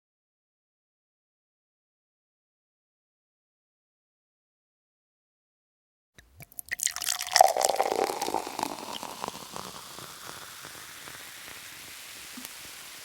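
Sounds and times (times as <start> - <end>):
water flowing: 6.2 - 13.0.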